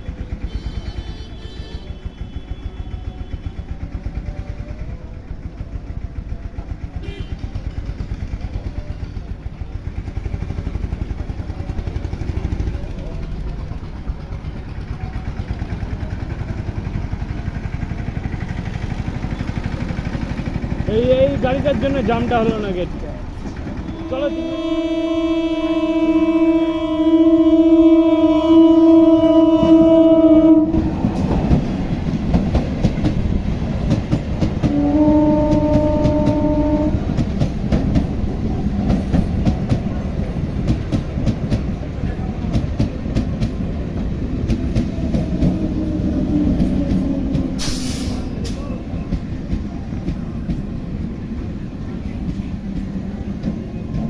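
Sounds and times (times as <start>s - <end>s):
vehicle engine idling: 0.0s - 53.4s
train rumbling past: 0.0s - 54.0s
train horn: 0.4s - 3.9s, 7.0s - 7.6s, 23.5s - 31.6s, 34.6s - 37.5s
wheels clacking over rail joints: 29.2s - 54.0s.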